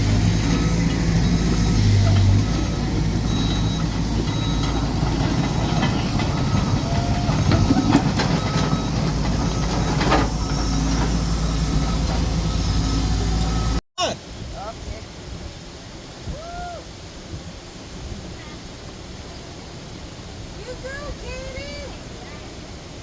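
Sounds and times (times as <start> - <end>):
diesel engine running: 0.0 - 13.8.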